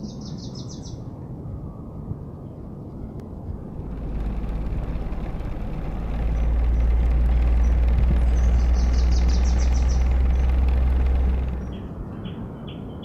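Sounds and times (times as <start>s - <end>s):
large vehicle engine rumble: 3.2s - 12.6s.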